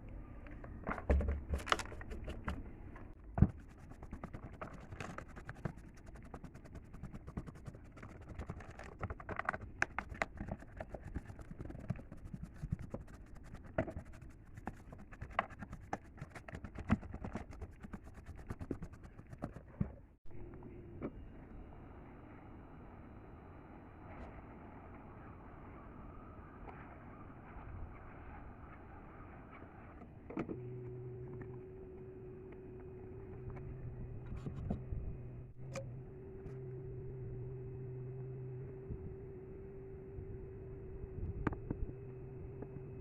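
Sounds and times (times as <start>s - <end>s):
scratching on hard surface: 0.8s - 20.0s.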